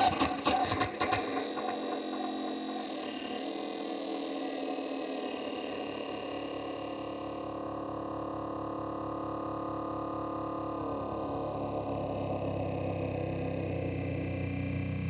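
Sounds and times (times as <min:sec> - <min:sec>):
harsh noise wash: 0:00.0 - 0:07.3
sustained electronic drone: 0:00.0 - 0:15.0.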